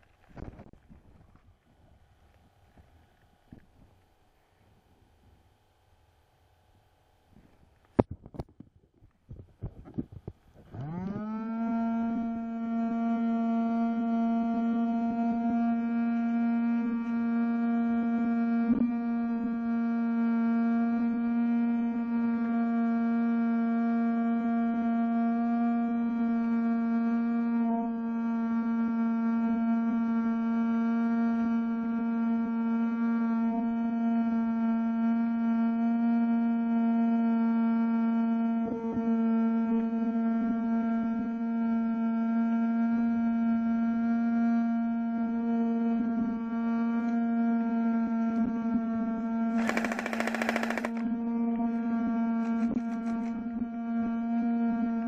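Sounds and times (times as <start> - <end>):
electric fan humming: 49.6 - 51.0.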